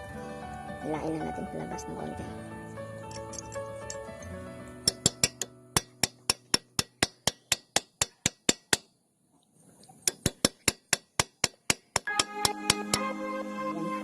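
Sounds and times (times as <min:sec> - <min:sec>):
background music with ticking beat: 0:02.5 - 0:07.9, 0:11.0 - 0:13.2.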